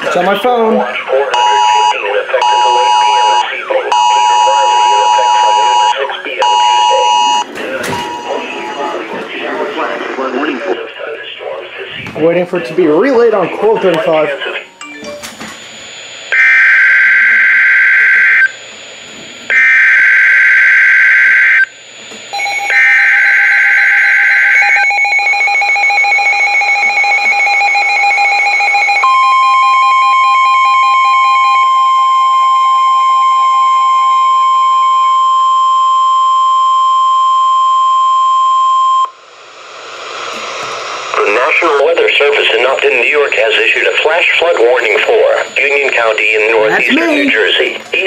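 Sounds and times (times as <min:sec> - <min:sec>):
lower alarm tone: 0:01.4 - 0:09.2, 0:14.4 - 0:18.6, 0:19.5 - 0:39.2
steady single-pitch alarm tone: 0:04.0 - 0:09.2, 0:14.1 - 0:18.6, 0:19.5 - 0:39.3.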